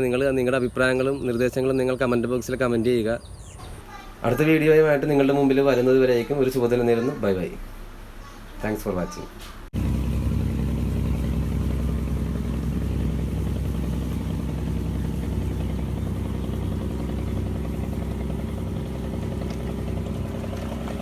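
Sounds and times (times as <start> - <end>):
combustion engine running: 9.8 - 21.0.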